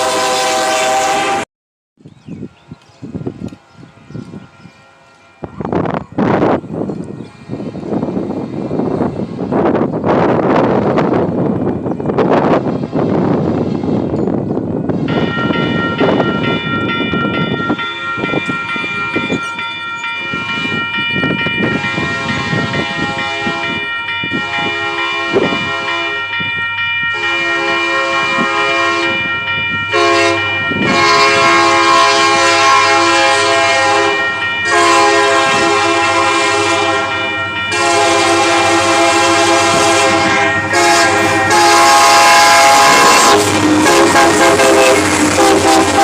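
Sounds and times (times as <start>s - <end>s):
locomotive air horn blasts: 0.0s - 1.5s, 21.7s - 26.2s, 27.1s - 29.3s, 29.9s - 46.0s
train rumble: 2.2s - 46.0s.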